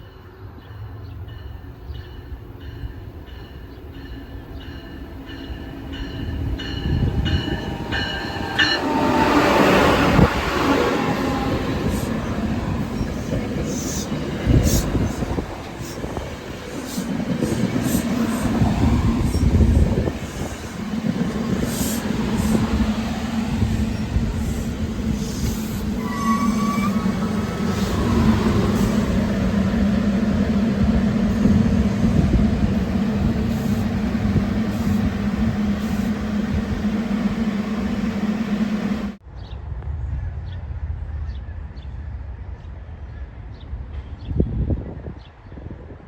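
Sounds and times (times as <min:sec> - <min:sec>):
train rumbling: 0:00.0 - 0:46.0
high wheel squeal: 0:21.6 - 0:29.8.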